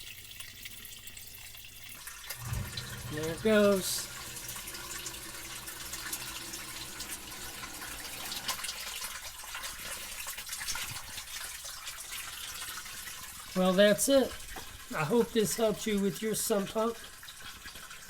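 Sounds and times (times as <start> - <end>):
pump motor humming: 2.3 - 9.6
water rushing and gurgling: 2.4 - 8.7.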